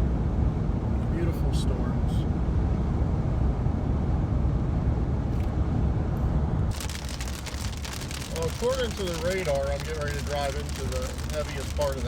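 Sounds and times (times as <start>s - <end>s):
car road and engine rumble: 0.0s - 12.0s
rapid dense clicking: 6.7s - 12.0s.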